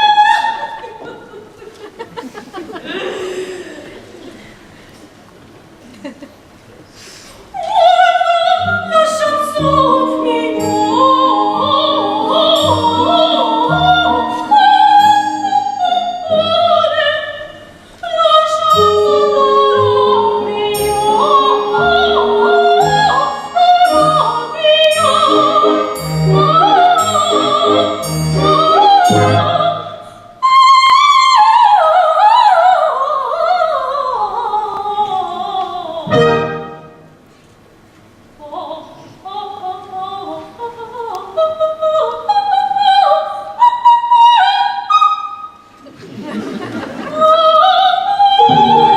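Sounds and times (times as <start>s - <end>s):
operatic high voice singing: 7.6s - 36.7s, 46.9s - 48.9s
instrumental accompaniment: 8.6s - 17.0s, 18.7s - 30.0s, 36.0s - 37.3s, 48.4s - 48.9s.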